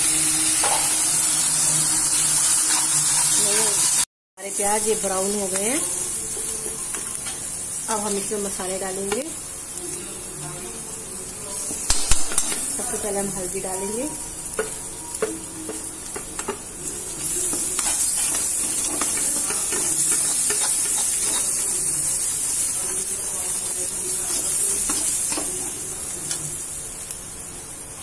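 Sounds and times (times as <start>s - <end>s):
paste sizzling in hot oil: 0.0s - 27.8s
spoon stirring and scraping pan: 4.6s - 9.4s, 10.4s - 26.7s.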